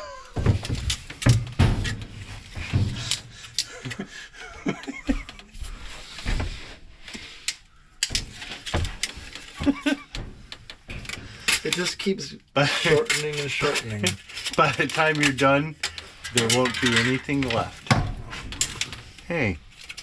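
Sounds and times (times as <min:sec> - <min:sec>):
rustling: 0:00.0 - 0:20.0
knocks clicks and thumps: 0:00.2 - 0:06.7, 0:08.0 - 0:12.2.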